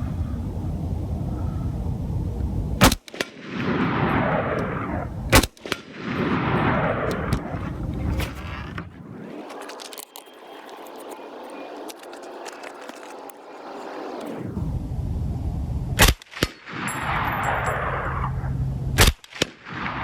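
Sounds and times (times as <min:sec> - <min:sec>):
rifle shots: 0:02.8 - 0:08.4.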